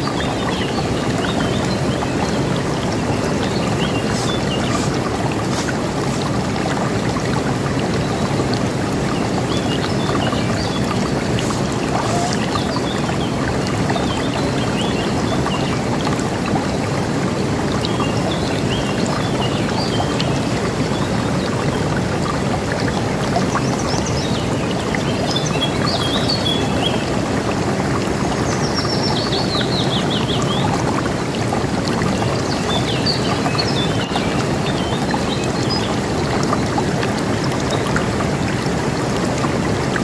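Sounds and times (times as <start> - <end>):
river water rushing: 0.0 - 23.7.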